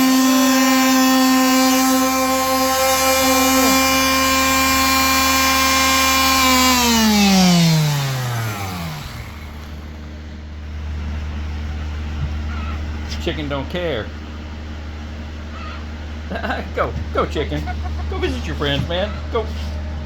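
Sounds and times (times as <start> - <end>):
motor-driven machine whining: 0.0 - 10.8.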